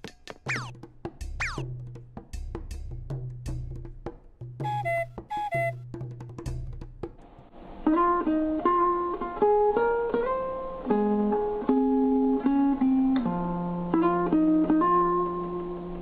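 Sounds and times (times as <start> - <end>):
low held note: 4.6 - 5.8
plucked string melody: 4.6 - 6.2, 7.8 - 16.0.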